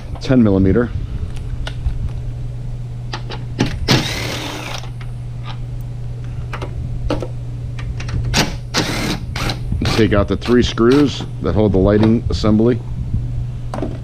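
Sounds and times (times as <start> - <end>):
steady low hum: 0.0 - 14.0
power drill running: 3.8 - 4.9, 8.3 - 11.2.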